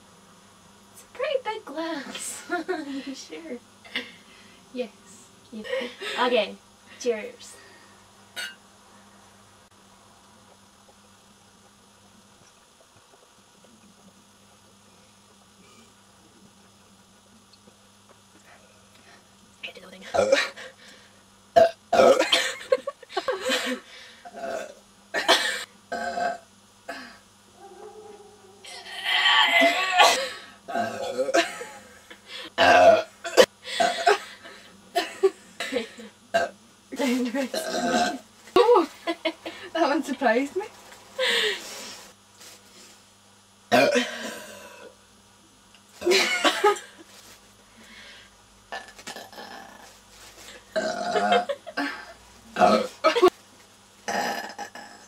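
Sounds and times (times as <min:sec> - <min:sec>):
girl burping loudly: 0:20.1 - 0:20.5, 0:21.6 - 0:22.5, 0:24.3 - 0:27.1, 0:28.7 - 0:31.4, 0:32.6 - 0:34.2, 0:37.6 - 0:38.2, 0:43.7 - 0:44.9, 0:48.7 - 0:49.8, 0:50.7 - 0:52.0, 0:52.6 - 0:53.3, 0:54.1 - 0:55.0.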